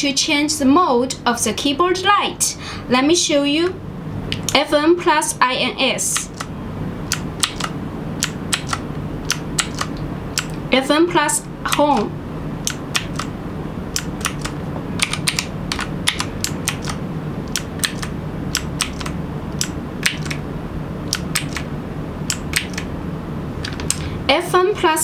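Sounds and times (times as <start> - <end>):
steady low hum: 0.0 - 25.0
mechanical keyboard clicks: 6.2 - 6.5, 7.1 - 10.6, 11.7 - 13.3, 13.9 - 20.4, 21.1 - 21.7, 22.3 - 22.9.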